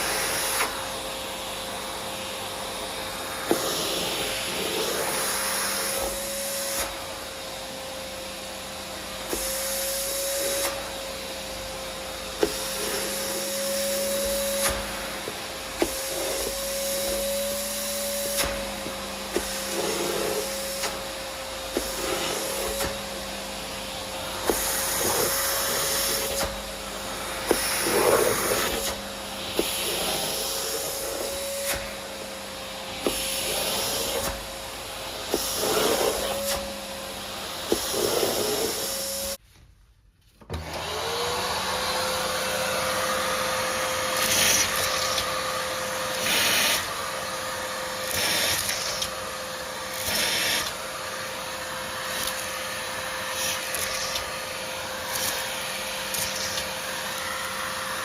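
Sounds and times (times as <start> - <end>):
vacuum cleaner running: 0.0 - 39.4, 40.4 - 58.0.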